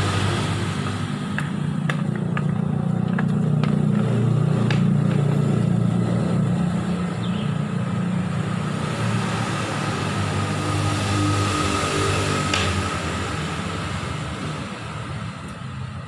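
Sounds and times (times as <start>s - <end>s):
motorcycle engine running: 0.0s - 8.4s.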